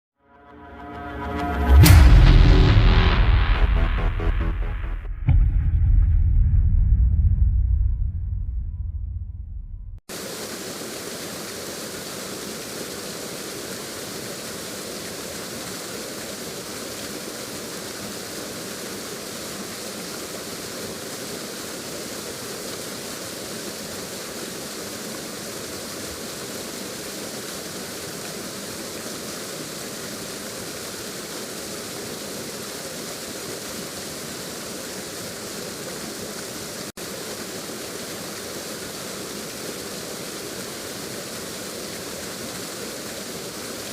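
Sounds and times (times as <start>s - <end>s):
waterfall rushing: 10.1s - 43.9s.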